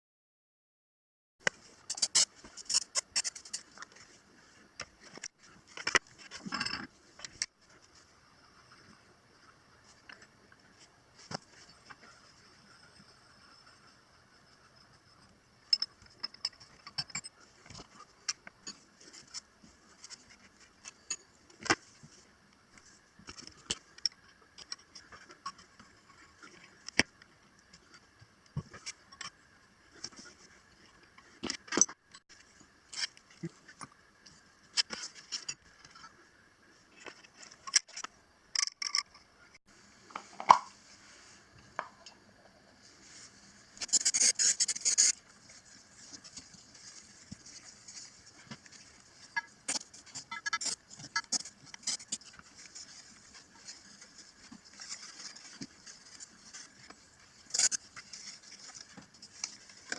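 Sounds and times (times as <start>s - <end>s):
rasping scrape: 43.1s - 59.9s.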